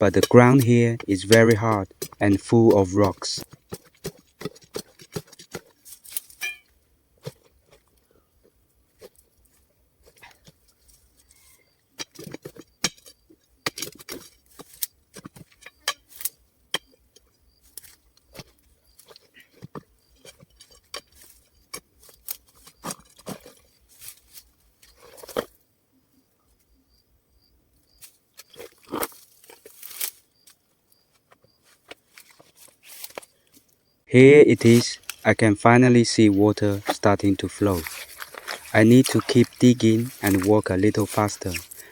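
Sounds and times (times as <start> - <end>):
hand tool digging rocky ground: 0.0 - 25.6, 28.0 - 30.6, 31.2 - 33.4, 34.2 - 41.9.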